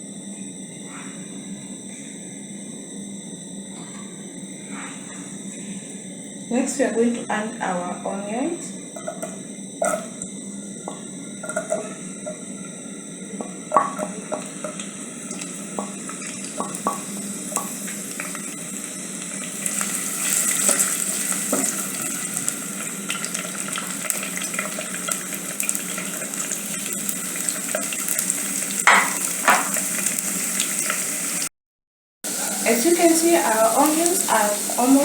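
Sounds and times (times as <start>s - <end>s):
onions sizzling in a pan: 13.3s - 31.5s, 32.3s - 35.0s.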